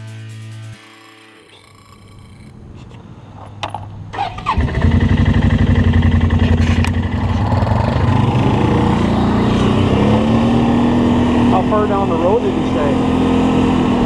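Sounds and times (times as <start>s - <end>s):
starter clicks: 0.8s - 4.6s
engine running steadily: 3.6s - 14.0s.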